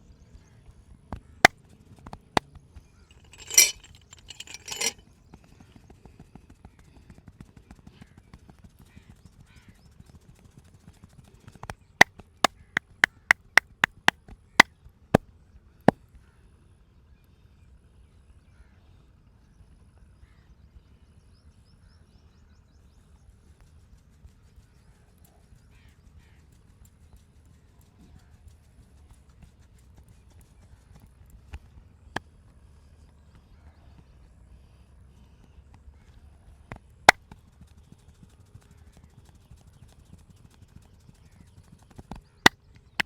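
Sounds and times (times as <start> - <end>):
hands rubbing: 3.1 - 5.0.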